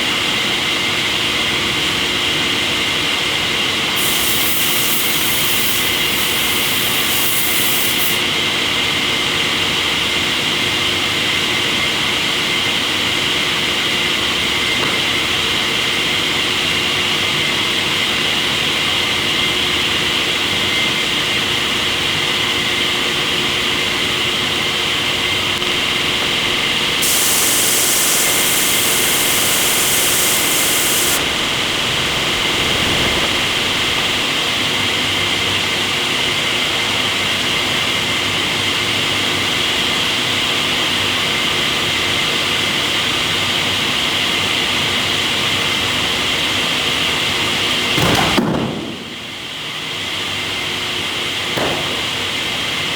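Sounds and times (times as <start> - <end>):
sawmill machinery drone: 0.0 - 43.4
sharp high hiss: 4.0 - 8.3, 25.6 - 35.8.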